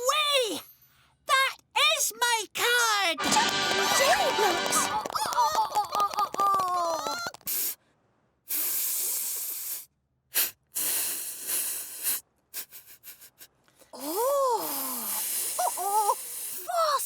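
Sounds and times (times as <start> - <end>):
cartoon hissing sound effect: 8.5 - 12.2, 14.0 - 16.7.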